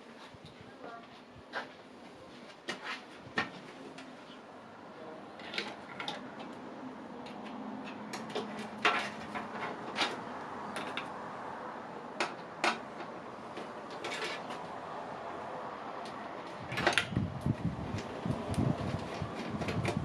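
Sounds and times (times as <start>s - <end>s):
metal hardware clicks and knocks: 5.4s - 6.6s, 7.2s - 11.2s, 12.1s - 14.7s, 16.0s - 17.2s.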